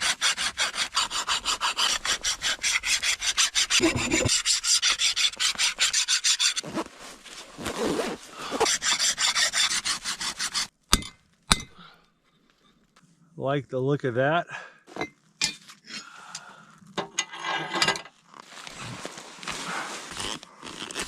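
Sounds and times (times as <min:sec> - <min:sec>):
hand file rasping on steel: 0:00.0 - 0:06.6, 0:08.5 - 0:10.7.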